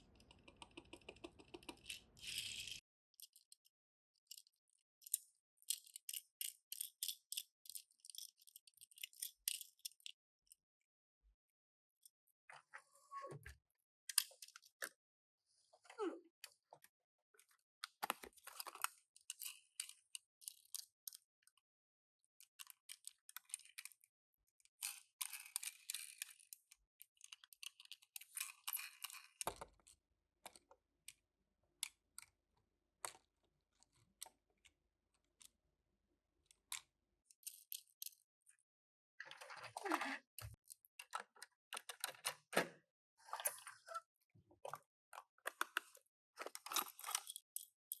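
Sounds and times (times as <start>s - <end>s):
small plastic clicks and taps: 0.1s - 2.1s, 24.7s - 31.2s.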